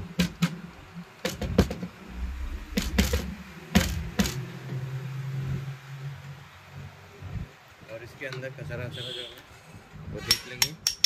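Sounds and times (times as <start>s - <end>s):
handling rumble: 1.5s - 4.3s
parts clicking and knocking: 10.3s - 11.0s.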